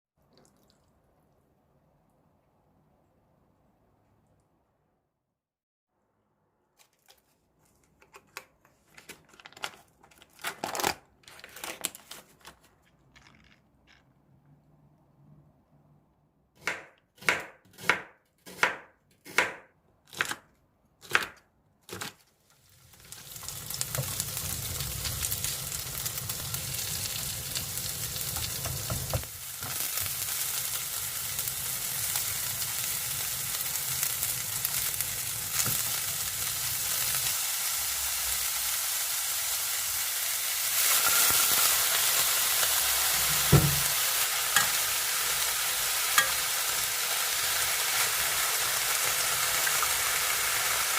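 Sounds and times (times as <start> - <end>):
food sizzling in frying pan: 22.5 - 50.9
single knock: 43.5 - 43.8.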